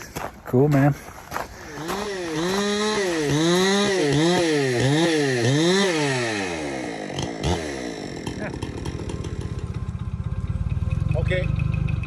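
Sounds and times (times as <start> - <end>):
chainsaw engine revving: 1.5 - 10.0.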